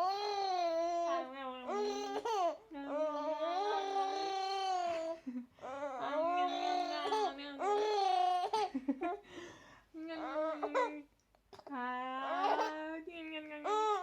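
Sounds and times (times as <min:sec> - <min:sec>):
baby fussing and babbling: 0:00.0 - 0:08.7.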